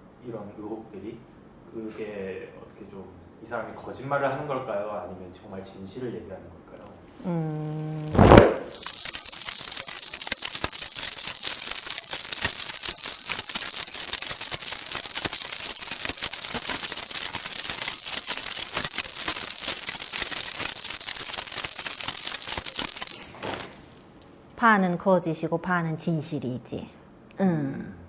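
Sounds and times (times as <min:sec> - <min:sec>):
bells jingling rapidly: 0:07.2 - 0:24.4.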